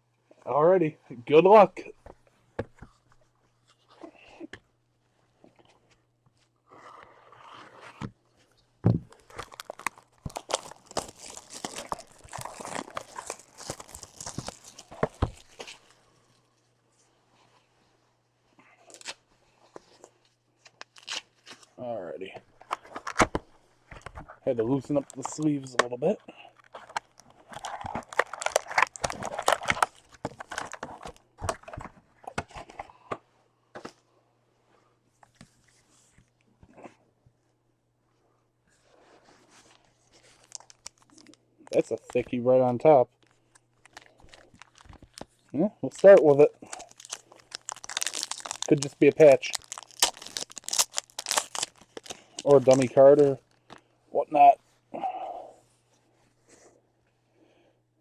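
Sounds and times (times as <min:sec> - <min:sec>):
plastic wrap crinkling: 0:09.1 - 0:16.1, 0:20.7 - 0:21.7, 0:22.6 - 0:31.8, 0:39.6 - 0:42.3, 0:42.9 - 0:53.8.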